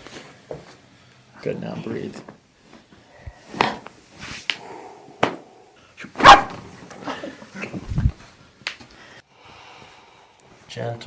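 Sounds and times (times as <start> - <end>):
back cracking: 2.2 - 5.6.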